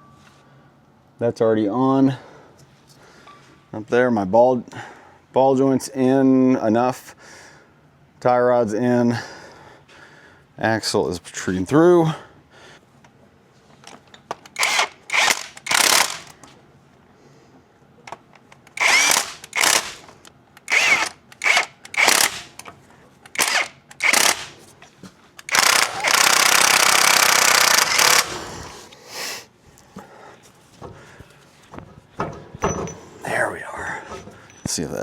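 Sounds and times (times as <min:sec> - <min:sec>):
impact wrench bursts: 0:14.4 - 0:16.4, 0:18.7 - 0:22.7, 0:23.3 - 0:24.7, 0:25.4 - 0:28.8.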